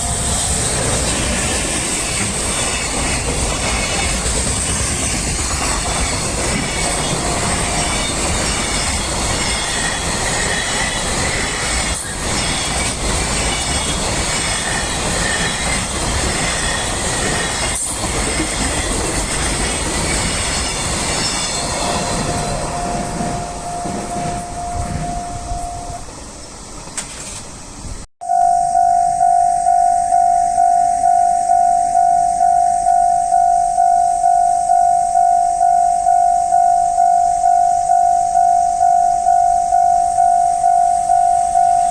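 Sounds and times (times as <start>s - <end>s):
train wheels clacking on rails: 0.0s - 27.5s
steady tone: 21.9s - 26.1s, 28.2s - 41.9s.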